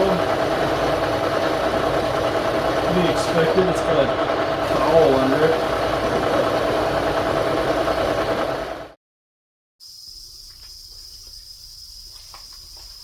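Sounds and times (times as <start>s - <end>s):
milling machine cutting: 0.0s - 8.9s
steady high whine: 0.0s - 8.9s.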